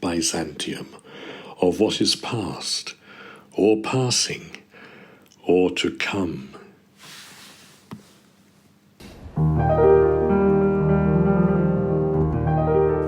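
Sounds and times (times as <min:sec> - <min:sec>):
short breath: 0:01.0 - 0:01.6, 0:03.0 - 0:03.5, 0:04.7 - 0:05.3
soft piano chords: 0:09.2 - 0:13.0.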